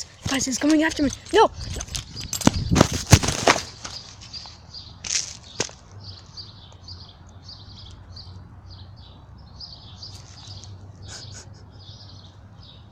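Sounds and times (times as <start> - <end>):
birds chirping: 0.0 - 12.9.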